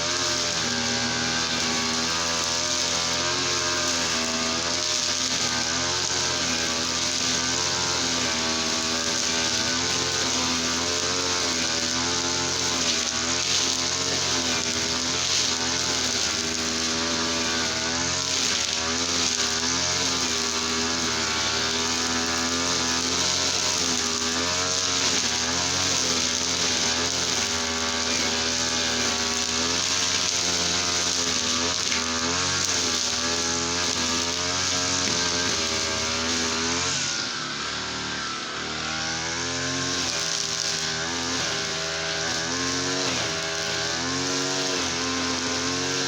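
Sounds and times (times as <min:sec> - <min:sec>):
brush cutter running at high revs: 0:00.0 - 0:46.0.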